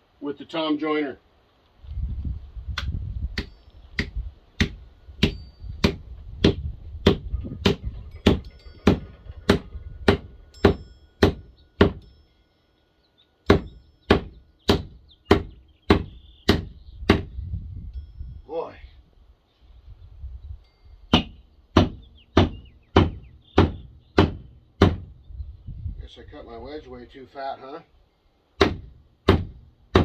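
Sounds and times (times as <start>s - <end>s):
hammer striking wooden wedge: 2.8s - 12.0s, 13.4s - 17.3s, 21.1s - 25.1s, 28.6s - 30.0s.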